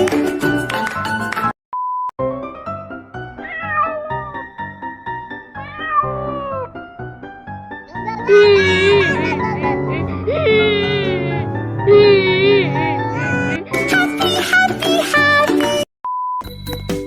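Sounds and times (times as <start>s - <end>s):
music: 0.0s - 1.5s, 2.2s - 17.0s
short steady beep: 1.8s - 2.1s, 16.1s - 17.0s
slow music: 2.3s - 15.0s
long falling cat meows: 3.4s - 4.4s, 5.6s - 6.7s.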